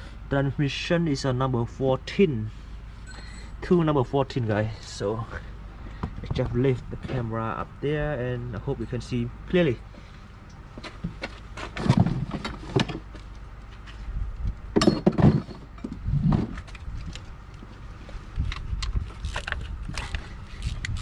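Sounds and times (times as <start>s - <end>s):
heavy clunks: 10.8s - 13.2s, 14.7s - 16.8s.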